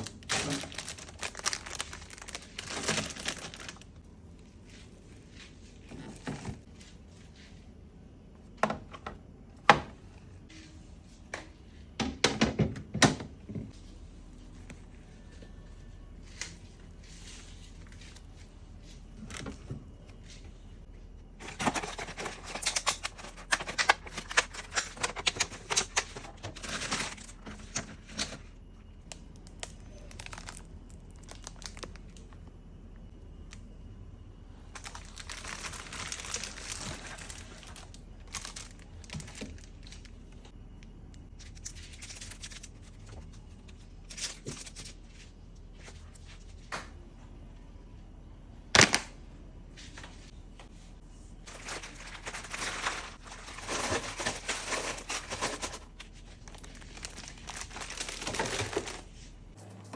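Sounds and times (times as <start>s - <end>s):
packaging crinkling: 0.0s - 4.0s, 21.4s - 28.5s, 29.1s - 32.4s, 34.7s - 40.4s, 51.4s - 59.2s.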